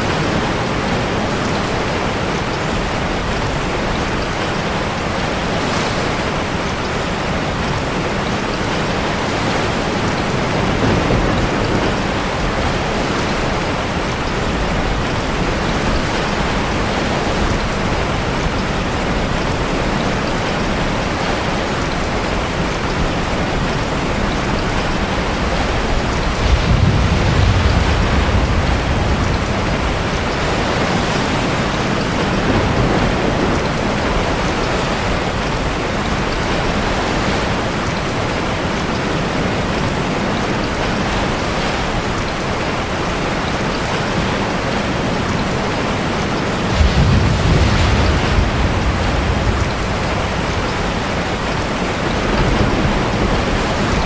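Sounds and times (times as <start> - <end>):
heavy rain: 0.0 - 54.0
surf surging in sea cave: 0.0 - 54.0
deep low rumble: 46.7 - 51.8.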